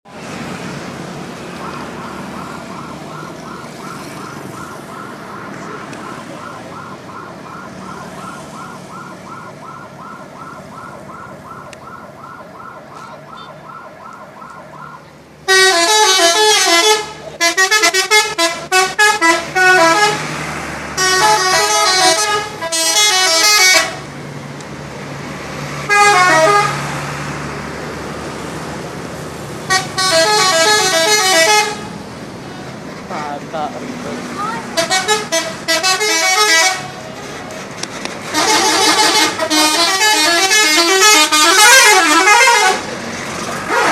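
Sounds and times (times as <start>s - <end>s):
bus engine running: 0.1s - 43.9s
multi-tone bus air horns: 15.5s - 20.3s, 21.0s - 24.1s, 25.8s - 26.9s, 29.6s - 32.0s, 34.4s - 42.9s, 43.6s - 43.9s.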